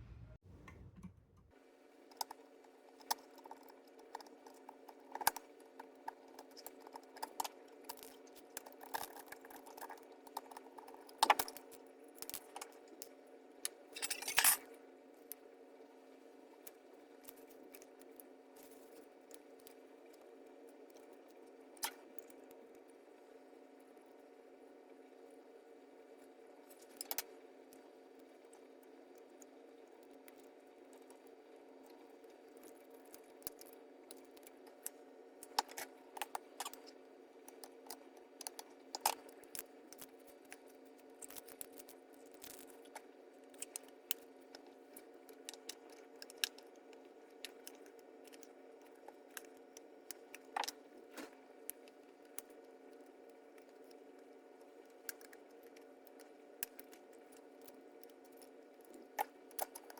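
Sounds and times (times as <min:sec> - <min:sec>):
faint hum: 0:00.0 - 0:02.4.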